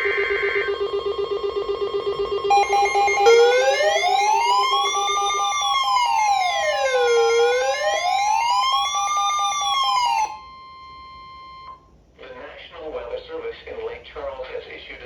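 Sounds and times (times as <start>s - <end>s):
pulsing beep tone: 0.0s - 5.7s, 10.3s - 11.8s
electronic siren wailing: 0.0s - 11.8s
steady alert tone: 0.0s - 11.8s.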